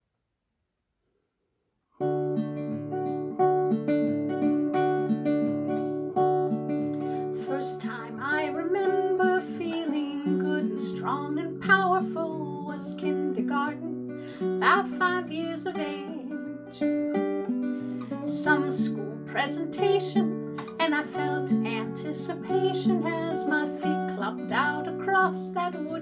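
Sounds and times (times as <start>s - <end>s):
acoustic guitar picking chords: 2.0s - 26.0s
person singing: 7.0s - 26.0s.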